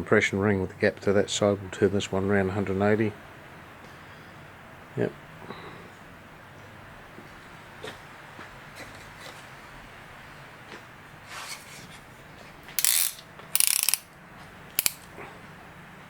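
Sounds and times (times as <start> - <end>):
ratchet wrench clicking: 12.8 - 14.1, 14.8 - 15.1
tools tapping against metal: 14.8 - 15.1.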